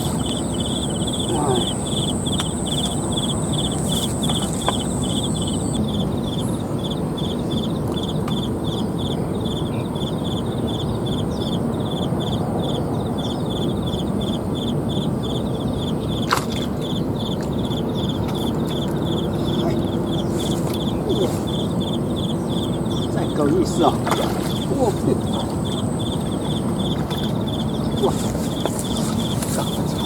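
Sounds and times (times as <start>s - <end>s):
insect chirping: 0.0s - 30.0s.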